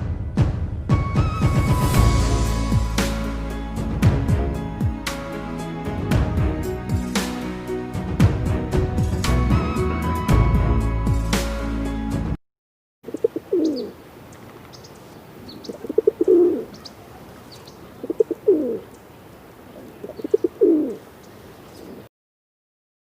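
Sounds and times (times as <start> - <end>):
dove cooing: 13.1 - 14.0, 15.4 - 19.0, 19.7 - 21.1
small birds chirping: 13.1 - 22.1.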